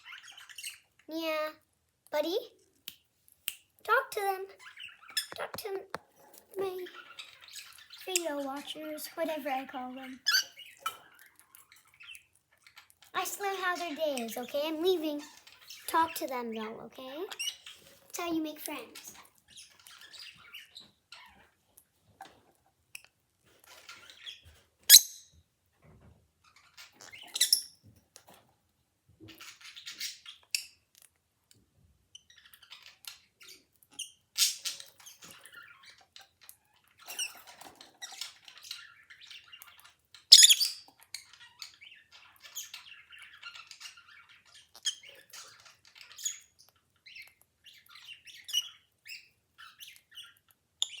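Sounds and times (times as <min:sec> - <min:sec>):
birds chirping and squawking: 0:00.0 - 0:01.5, 0:03.9 - 0:22.6, 0:23.6 - 0:25.4, 0:26.4 - 0:28.4, 0:29.2 - 0:30.9, 0:32.2 - 0:51.0.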